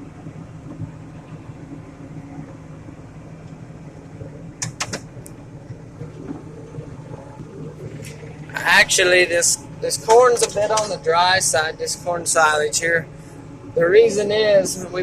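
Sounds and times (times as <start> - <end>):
tractor engine running: 0.0 - 15.0
sharp clicks: 4.6 - 5.4.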